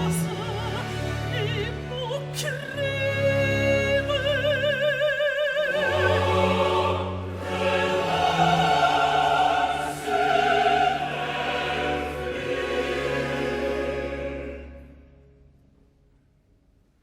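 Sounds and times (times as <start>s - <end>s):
opera singing with vibrato: 0.0s - 14.7s
orchestra playing: 5.6s - 15.1s.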